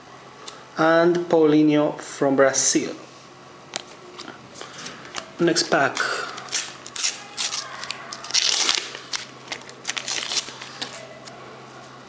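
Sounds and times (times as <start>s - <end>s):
packet tearing: 6.0s - 11.0s
packet crinkling rustles: 6.0s - 11.1s.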